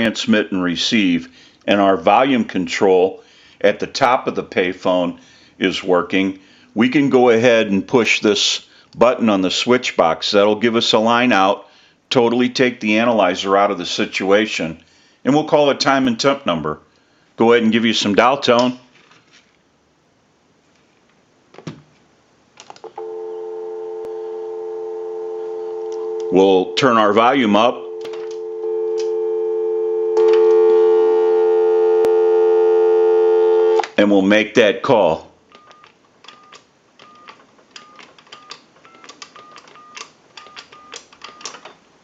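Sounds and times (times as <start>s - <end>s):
telephone dial tone: 22.9s - 33.8s.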